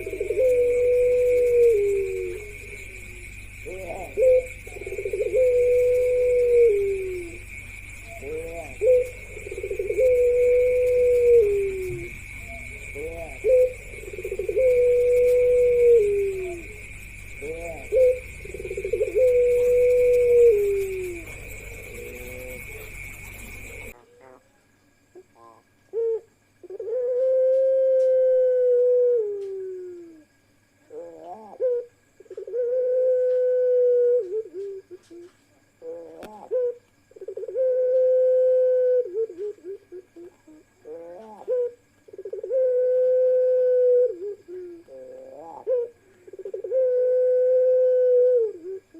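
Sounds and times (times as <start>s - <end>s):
steady high whine: 0.0s - 24.0s
dove cooing: 0.0s - 24.4s, 25.2s - 48.9s.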